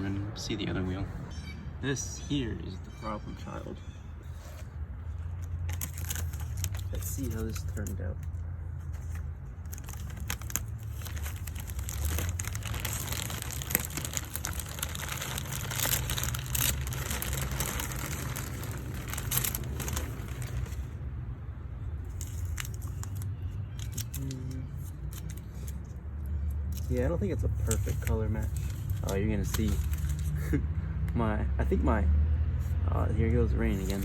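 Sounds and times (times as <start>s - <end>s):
paper crinkling and crackling: 4.2s - 21.0s, 22.0s - 30.5s, 33.5s - 34.0s.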